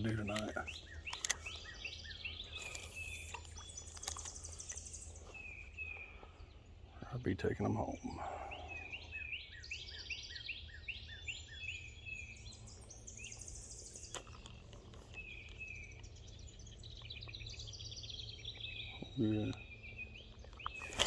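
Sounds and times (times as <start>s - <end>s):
songbird chirping and trilling: 0.0s - 21.0s
sharp click: 0.3s - 1.7s, 2.6s - 4.8s.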